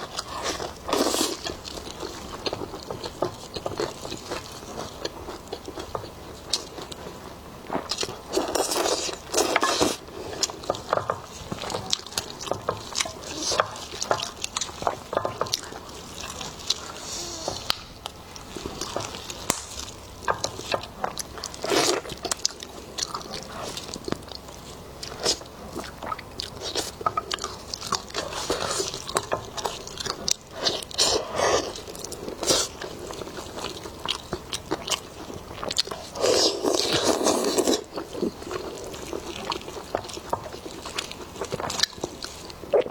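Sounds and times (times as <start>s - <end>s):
person chewing: 0.0s - 42.9s.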